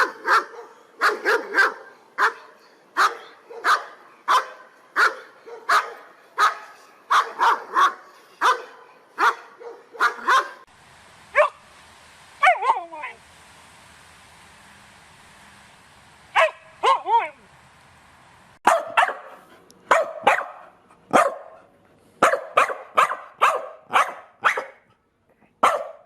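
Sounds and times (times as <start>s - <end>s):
dog barking: 0.0s - 10.6s, 11.4s - 11.6s, 16.4s - 17.3s, 18.6s - 24.8s, 25.6s - 26.0s
steady hiss: 10.6s - 18.6s.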